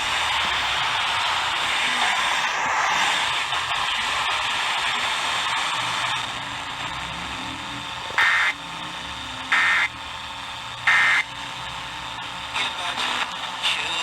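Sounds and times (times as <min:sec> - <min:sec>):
radio static hiss: 0:00.0 - 0:14.0
warbling digital data tones: 0:05.9 - 0:10.0, 0:10.8 - 0:11.4.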